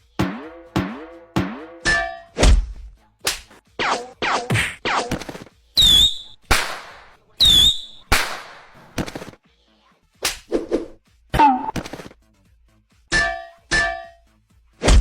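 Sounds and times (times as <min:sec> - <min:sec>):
short high whistle: 0:05.8 - 0:06.4, 0:07.4 - 0:08.1.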